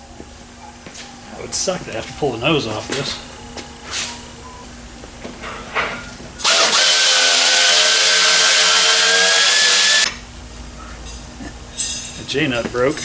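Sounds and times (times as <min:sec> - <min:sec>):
power drill whining: 0:06.4 - 0:10.1.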